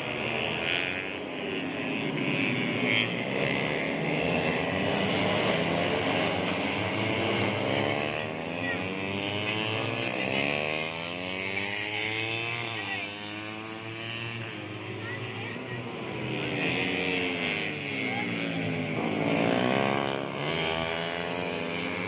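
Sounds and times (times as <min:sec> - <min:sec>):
racing motorcycles revving: 0:00.0 - 0:22.0.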